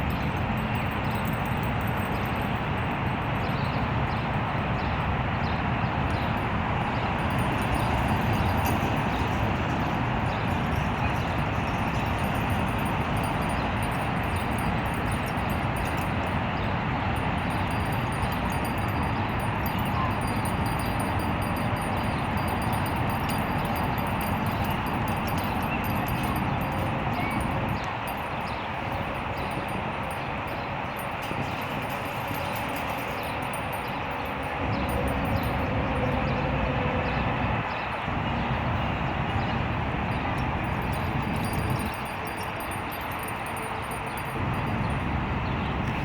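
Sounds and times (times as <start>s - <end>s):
small hand bells jingling: 0.0s - 4.4s, 6.3s - 36.3s, 40.2s - 45.1s
city traffic rumble: 0.0s - 46.0s
wind: 0.0s - 46.0s.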